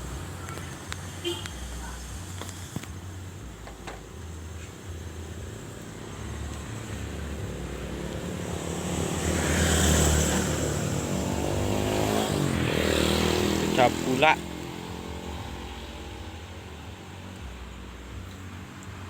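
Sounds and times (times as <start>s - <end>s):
vehicle engine droning past: 4.4s - 19.0s.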